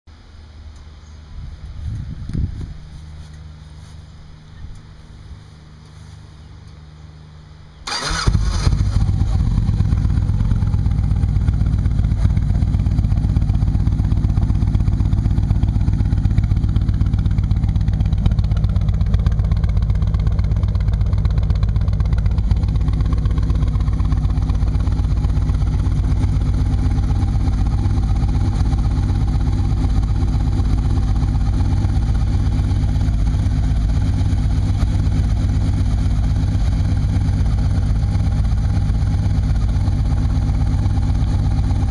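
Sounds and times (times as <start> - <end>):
engine starting and idling: 7.8 - 41.9.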